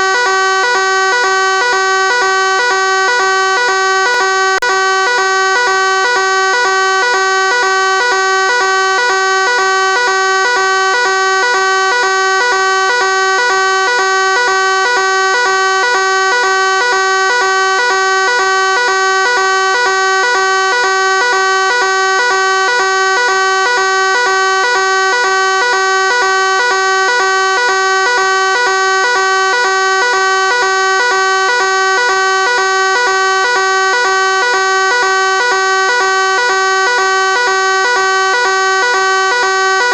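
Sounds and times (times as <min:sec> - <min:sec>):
fire alarm buzzing: 0:00.0 - 0:39.9.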